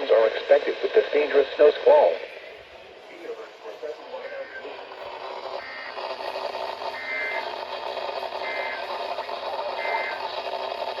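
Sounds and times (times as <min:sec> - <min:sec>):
radio hiss: 0:00.0 - 0:11.0
warbling two-tone data bursts: 0:06.9 - 0:07.5, 0:08.4 - 0:09.0.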